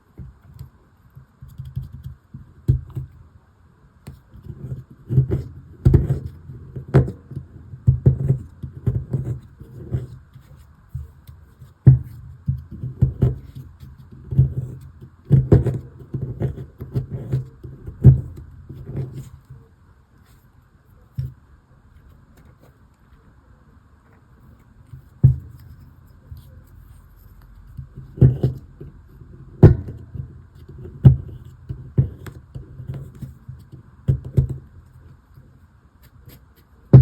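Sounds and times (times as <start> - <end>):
tool knocking and scraping plaster: 0.1 - 3.2, 4.1 - 19.7, 24.8 - 27.0, 27.6 - 34.7, 36.2 - 37.0.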